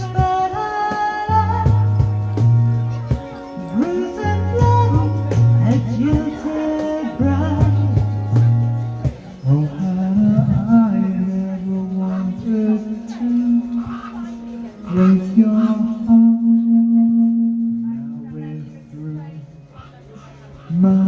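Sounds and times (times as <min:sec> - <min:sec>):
steady percussion beat: 0:00.0 - 0:16.5
person singing: 0:00.0 - 0:19.4
held low notes: 0:00.0 - 0:21.0.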